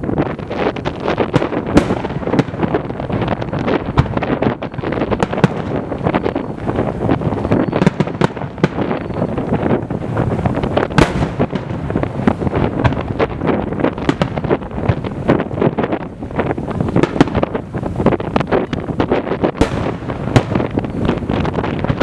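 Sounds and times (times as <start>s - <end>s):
wind buffeting microphone: 0.0s - 22.0s
firework shells bursting: 0.2s - 22.0s.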